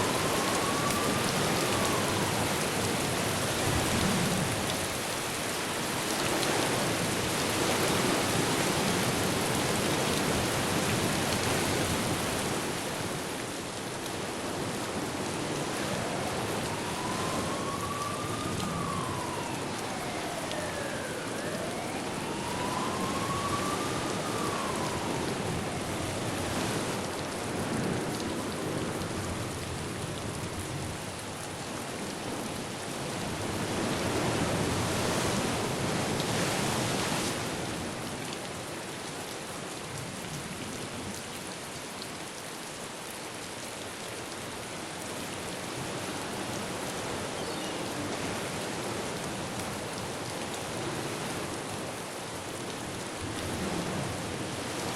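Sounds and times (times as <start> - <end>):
faint emergency siren wailing: 0.0 - 12.8, 14.4 - 37.8, 45.4 - 54.9
heavy rain: 0.0 - 54.9
wind: 0.0 - 54.9.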